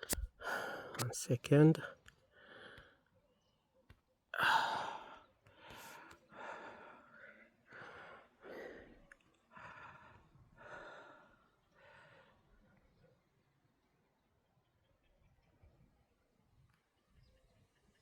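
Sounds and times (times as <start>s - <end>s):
person breathing heavily: 0.0s - 1.1s, 4.4s - 12.2s.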